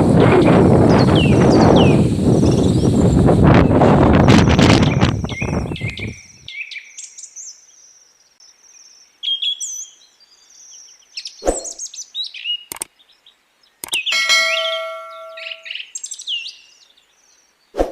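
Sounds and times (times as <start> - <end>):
birds chirping and calling: 0.1 - 7.6, 8.8 - 17.3
sharp clicks: 12.7 - 12.9, 13.8 - 14.1.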